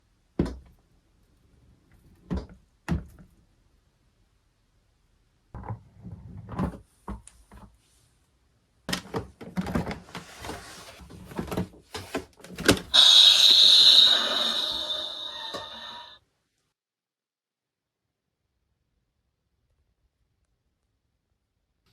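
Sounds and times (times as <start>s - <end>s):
electronic sound effect: 13.0s - 16.2s.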